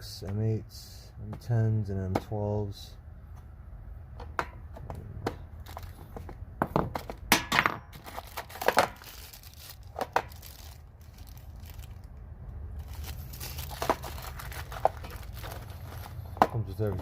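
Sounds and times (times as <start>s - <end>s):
small parts rustling and clicking: 5.6s - 7.2s, 7.9s - 17.0s.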